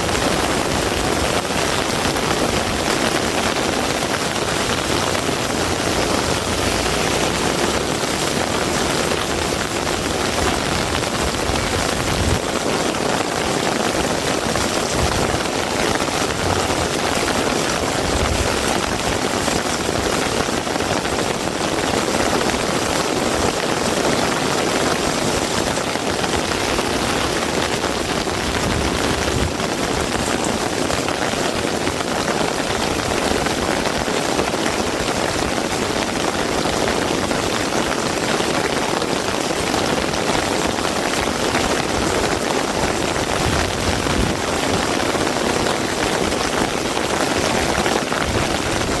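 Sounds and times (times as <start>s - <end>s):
heavy rain falling: 0.0s - 49.0s
low rumbles: 4.3s - 12.4s.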